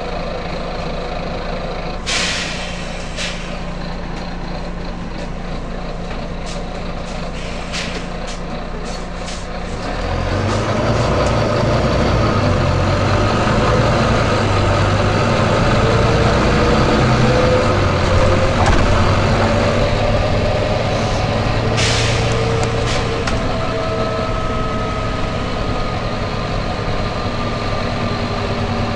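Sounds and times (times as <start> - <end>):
bus diesel engine: 0.0 - 28.9
air brake hisses: 2.0 - 3.7, 6.4 - 9.5, 20.9 - 23.2
engine whine: 9.3 - 28.9.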